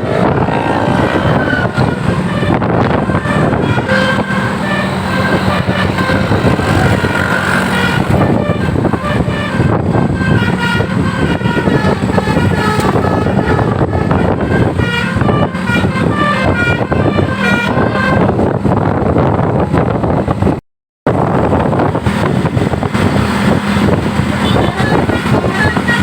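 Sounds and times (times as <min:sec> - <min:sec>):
steady low drone: 0:00.0 - 0:15.8
bus horn melodic toots: 0:00.0 - 0:18.9, 0:23.1 - 0:26.0.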